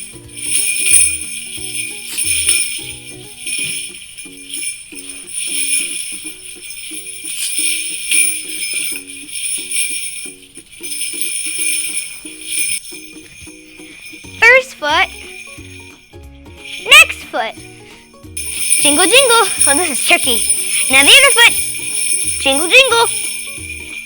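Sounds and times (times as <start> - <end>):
light background music: 0.0 - 24.0
small bells shaken on bracelets: 0.0 - 24.0.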